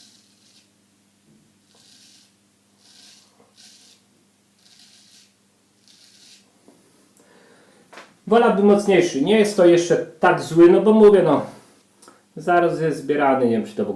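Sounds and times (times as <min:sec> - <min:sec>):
razor scraping stubble: 0:00.0 - 0:00.8, 0:01.6 - 0:06.5
steady low hum: 0:00.0 - 0:13.9.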